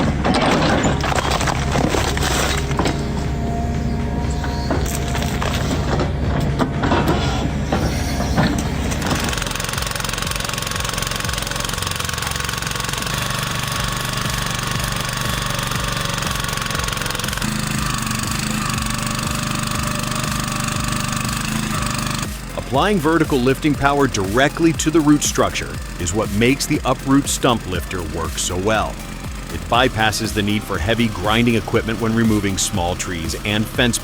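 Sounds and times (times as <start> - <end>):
wood cracking and splintering: 0.0 - 3.2
machine engine running under load: 0.0 - 34.0.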